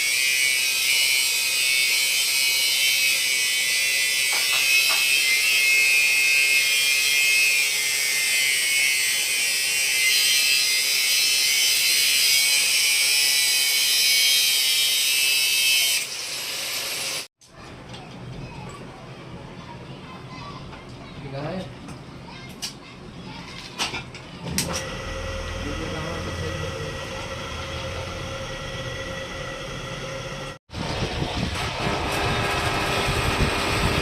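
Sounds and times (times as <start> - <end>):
power tool whining: 0.0 - 14.7, 24.5 - 34.0.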